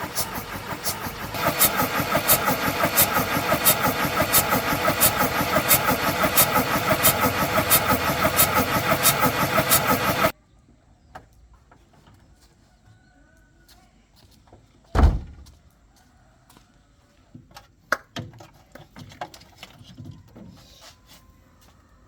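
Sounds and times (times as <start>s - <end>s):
car engine turning over: 0.0s - 10.3s.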